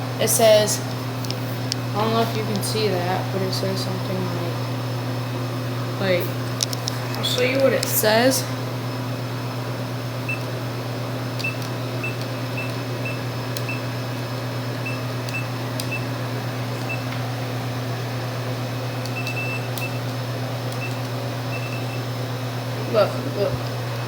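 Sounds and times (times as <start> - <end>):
vending machine humming: 0.0 - 24.0.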